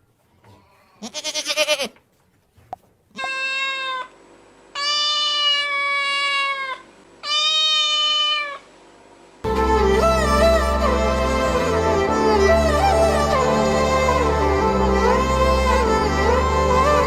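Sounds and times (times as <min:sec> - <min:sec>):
cat meowing: 0:03.2 - 0:04.1, 0:04.8 - 0:08.7
music: 0:09.5 - 0:17.0.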